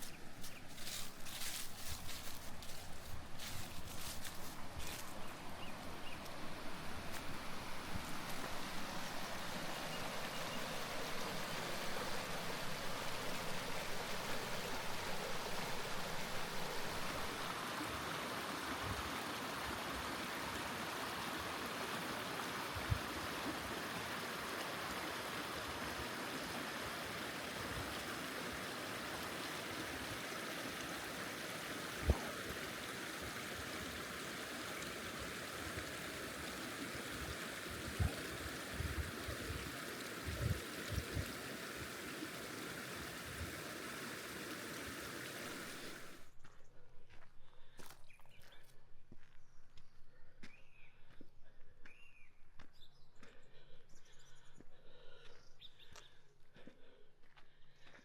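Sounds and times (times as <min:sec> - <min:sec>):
stream running: 0:00.0 - 0:46.4.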